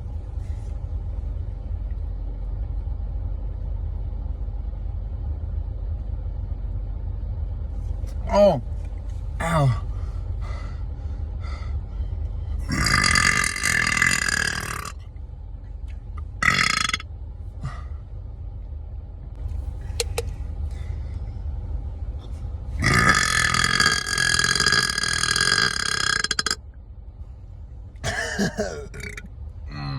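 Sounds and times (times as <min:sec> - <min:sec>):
person burping: 0:09.4 - 0:09.8, 0:12.6 - 0:15.0, 0:16.4 - 0:17.0, 0:22.8 - 0:26.6, 0:28.0 - 0:29.9.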